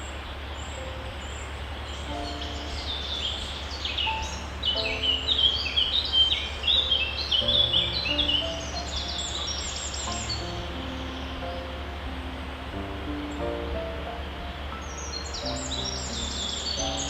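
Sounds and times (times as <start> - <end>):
songbirds chirping: 0.0 - 17.0
steady hiss and low hum: 0.0 - 17.0
soft held low tones: 7.4 - 17.0.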